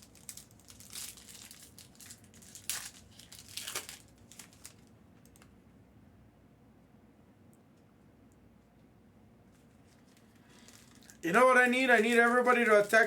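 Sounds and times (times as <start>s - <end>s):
foil wrappers crinkling: 0.0s - 5.5s, 9.6s - 13.0s.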